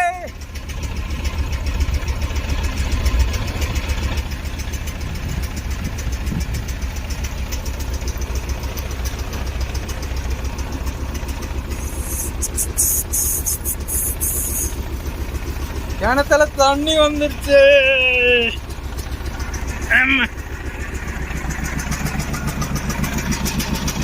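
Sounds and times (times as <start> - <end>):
excavator diesel engine running: 0.0 - 24.0.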